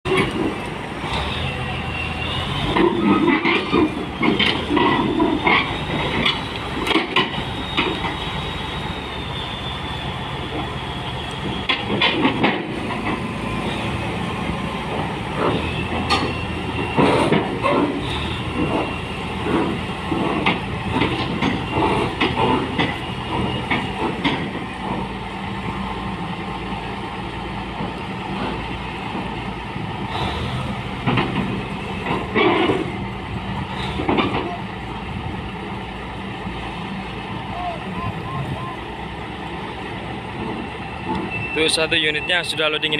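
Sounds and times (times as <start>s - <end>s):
diesel machinery running: 0.1s - 42.9s
metallic clanks and knocks: 16.0s - 16.4s.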